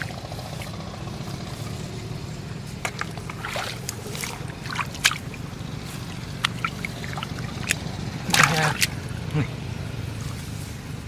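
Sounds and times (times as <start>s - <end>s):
steady low hum: 0.0s - 11.0s
water sloshing: 0.0s - 11.0s
small splashes and clicks: 2.7s - 9.4s.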